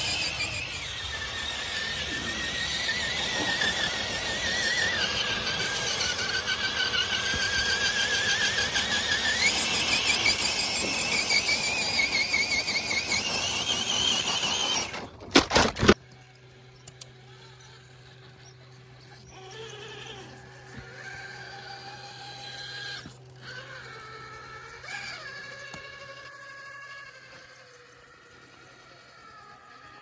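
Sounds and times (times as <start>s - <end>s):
electric motor whining: 0.0s - 30.0s
loud sharp clicks: 14.9s - 16.0s.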